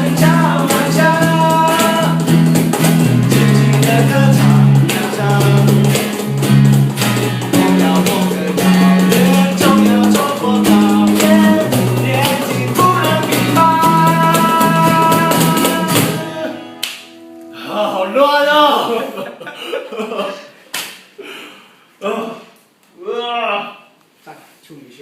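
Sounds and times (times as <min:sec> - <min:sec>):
drum kit beat: 0:00.0 - 0:18.1
bass notes: 0:00.0 - 0:19.0
guitar: 0:00.0 - 0:19.4.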